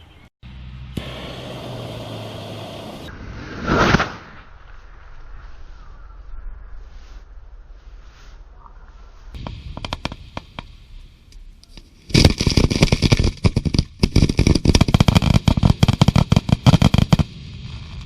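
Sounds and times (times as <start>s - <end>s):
fireworks crackling bangs: 9.3s - 18.0s.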